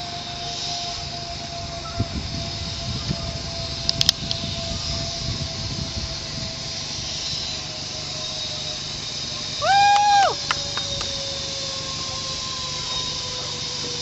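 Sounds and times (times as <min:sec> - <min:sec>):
zipline trolley whining on cable: 0:00.0 - 0:14.0
sharp clicks: 0:03.9 - 0:04.4.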